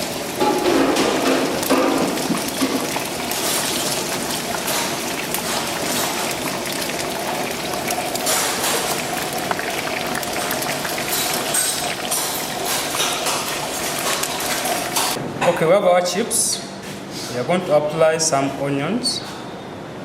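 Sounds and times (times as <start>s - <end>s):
hot oil sizzling: 0.0s - 15.2s.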